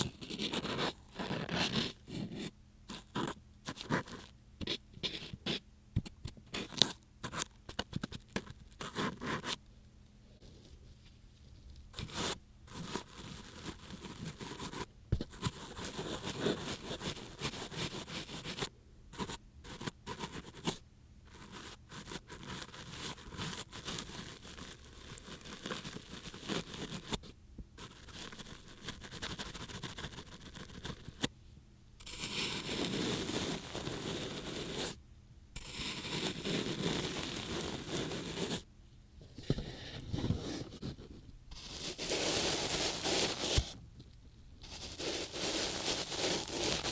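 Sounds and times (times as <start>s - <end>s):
rustling rub: 40.1s - 43.8s, 44.6s - 46.9s.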